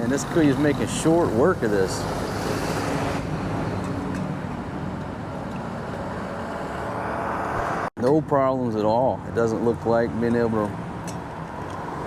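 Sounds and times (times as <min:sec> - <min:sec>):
engine hum: 0:00.0 - 0:07.9
traffic noise: 0:00.0 - 0:12.0.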